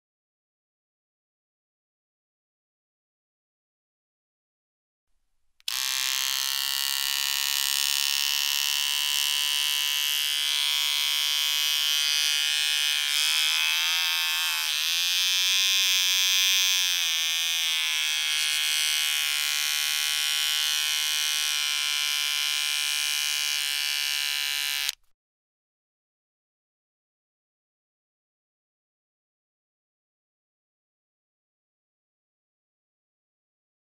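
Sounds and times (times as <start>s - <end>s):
electric beard trimmer buzzing: 5.6s - 25.0s.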